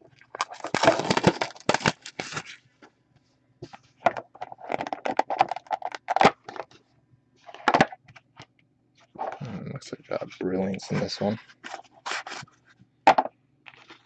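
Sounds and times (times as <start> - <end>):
plastic wrapping crinkling and tearing: 0.2 - 2.6, 4.6 - 6.3, 11.6 - 12.6, 13.6 - 14.0.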